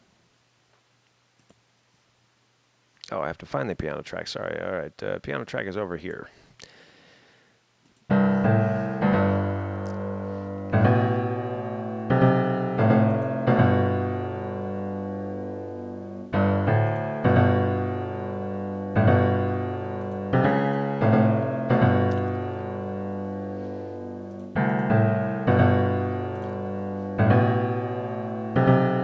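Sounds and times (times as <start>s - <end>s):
piano chords: 8.1s - 29.0s.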